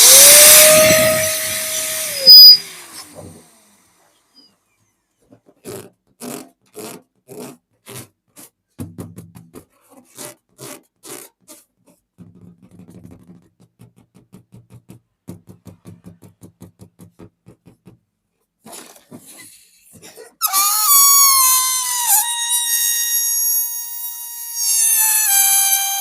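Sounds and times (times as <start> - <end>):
balloon being rubbed: 0.0 - 2.7, 5.5 - 8.6, 9.7 - 12.1, 20.4 - 26.0.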